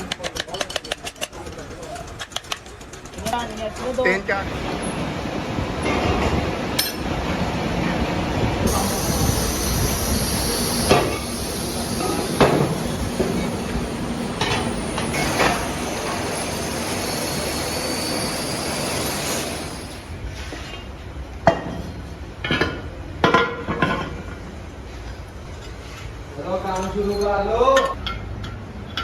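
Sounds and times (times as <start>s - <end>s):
hissing machine: 4.5s - 20.2s.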